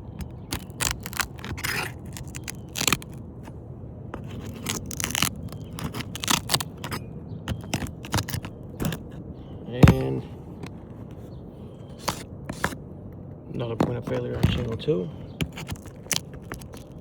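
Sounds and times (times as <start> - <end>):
shingles scraping and crackling: 0.0 - 3.6, 4.2 - 9.2, 11.9 - 12.8, 13.6 - 17.0.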